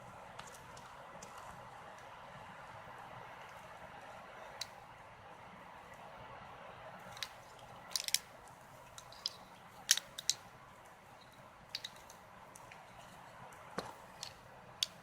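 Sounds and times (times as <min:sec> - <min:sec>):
steady low hiss: 0:00.0 - 0:15.0.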